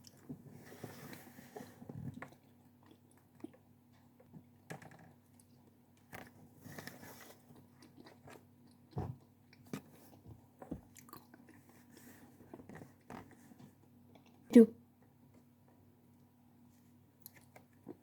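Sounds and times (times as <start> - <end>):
chewing and crunching snacks: 1.1 - 13.3, 14.1 - 14.5, 17.2 - 18.0.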